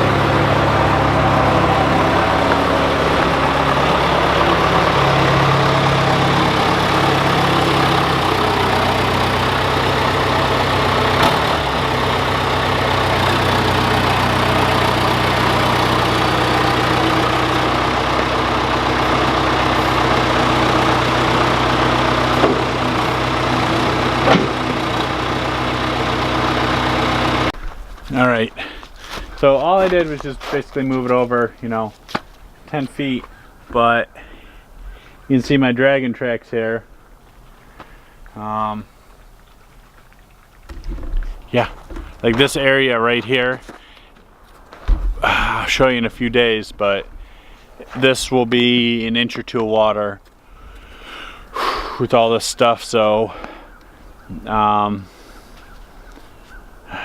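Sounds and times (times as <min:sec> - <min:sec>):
backhoe diesel engine running: 0:00.0 - 0:57.0
sharp knocks: 0:22.4 - 0:22.8, 0:24.2 - 0:24.7.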